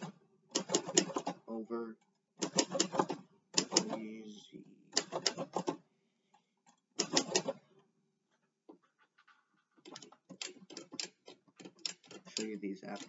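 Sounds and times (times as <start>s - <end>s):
typewriter keys striking: 2.4s - 4.0s, 5.0s - 5.8s, 9.8s - 13.0s.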